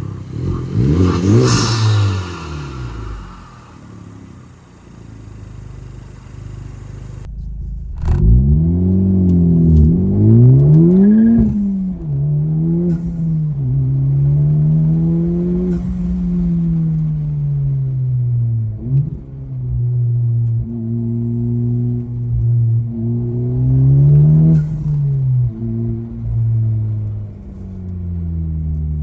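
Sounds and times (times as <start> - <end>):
turbocharged car engine revving: 0.0 - 29.0.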